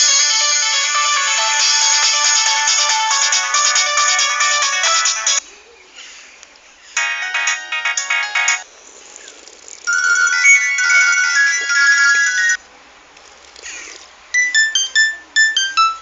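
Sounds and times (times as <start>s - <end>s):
phone ringtone melody: 7.0s - 8.6s, 9.9s - 12.6s, 14.4s - 16.0s
stepping electronic beep notes: 14.4s - 16.0s.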